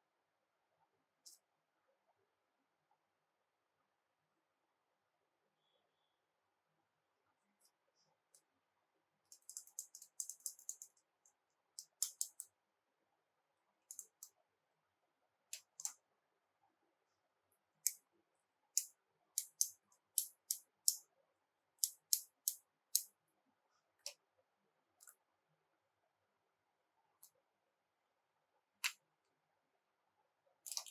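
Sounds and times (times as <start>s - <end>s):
plastic toy pieces clicking: 9.4s - 11.0s, 11.8s - 12.5s, 19.4s - 21.0s.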